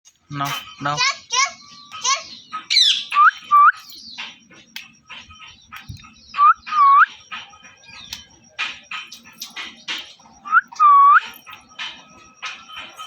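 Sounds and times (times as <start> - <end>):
parrot chirping: 0.4 - 13.0
parrot whistling: 1.4 - 4.0, 6.3 - 7.2, 10.4 - 11.3.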